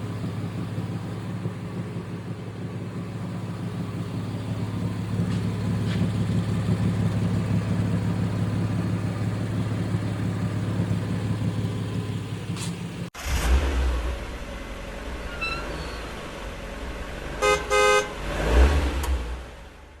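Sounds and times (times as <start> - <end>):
truck engine humming: 0.0 - 13.1
low vehicle rumble: 0.0 - 20.0
short horn toots: 17.4 - 18.2.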